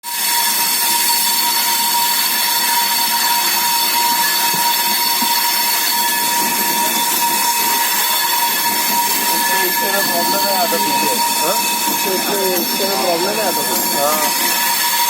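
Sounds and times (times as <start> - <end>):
train rushing noise: 1.1 - 15.0
high-pitched whine: 5.8 - 15.0.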